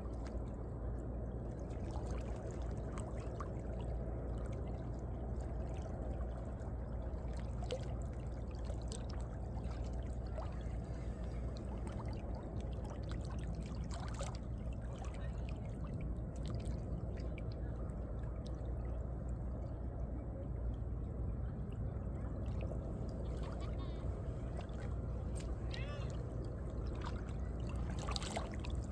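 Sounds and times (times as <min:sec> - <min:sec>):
small splashes and drips: 0:01.4 - 0:19.7, 0:22.4 - 0:28.9
waves lapping between rocks: 0:22.6 - 0:28.9.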